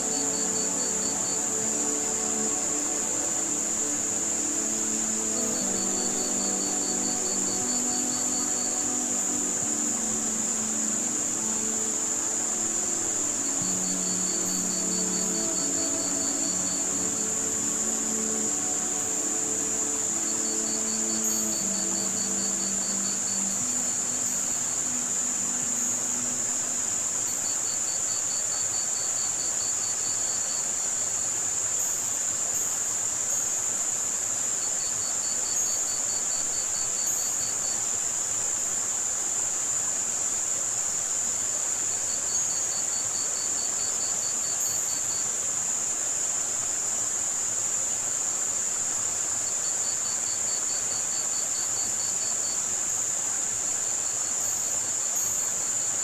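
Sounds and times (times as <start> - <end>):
crickets trilling: 0.0 - 56.0
high-pitched filtered white noise: 0.0 - 56.0
running water hiss: 0.0 - 56.0.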